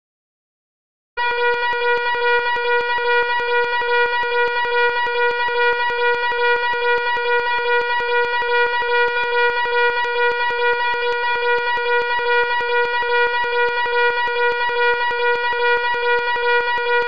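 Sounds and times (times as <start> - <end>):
fire alarm buzzing: 1.2 - 17.0.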